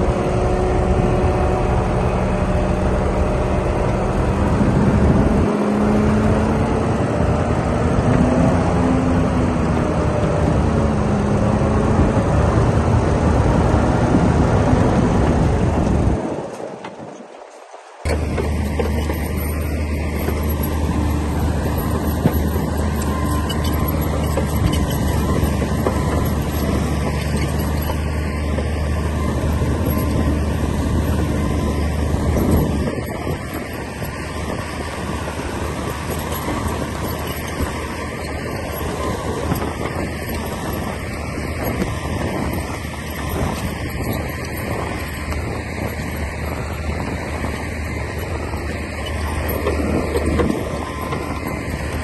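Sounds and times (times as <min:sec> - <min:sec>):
bulldozer diesel engine running: 0:00.0 - 0:17.0, 0:17.9 - 0:52.0.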